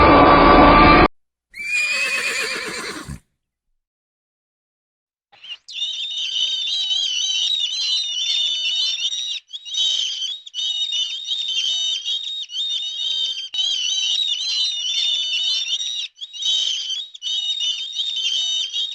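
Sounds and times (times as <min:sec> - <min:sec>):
birds chirping in a chorus: 0:05.4 - 0:18.9.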